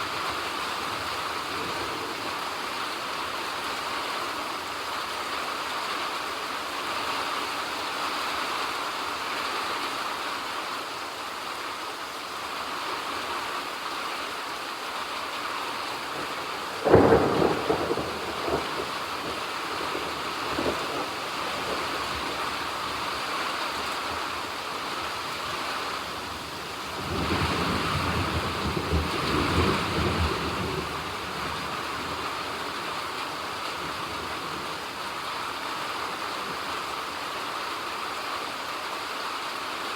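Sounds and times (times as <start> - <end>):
steady rain falling: 0.0 - 39.9
thunder clap and roll: 16.9 - 22.4.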